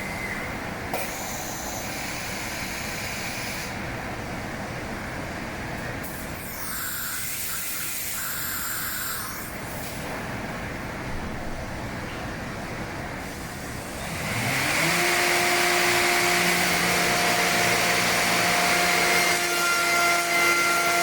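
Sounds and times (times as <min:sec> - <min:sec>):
hissing high whine: 0:00.0 - 0:03.8, 0:06.0 - 0:10.1
cnc machine running: 0:06.4 - 0:09.8, 0:13.9 - 0:21.0.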